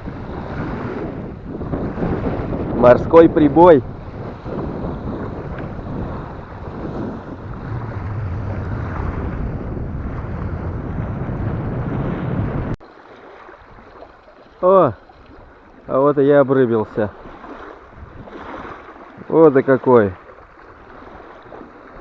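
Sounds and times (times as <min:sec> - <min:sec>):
wind buffeting microphone: 0:00.0 - 0:12.8
waves breaking on shore: 0:00.0 - 0:22.0.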